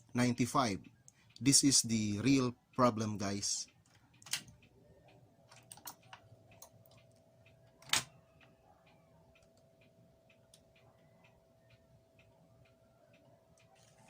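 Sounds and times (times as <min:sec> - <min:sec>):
faint motor hum: 0:00.0 - 0:14.0
record changer mechanism clicking: 0:05.4 - 0:14.0.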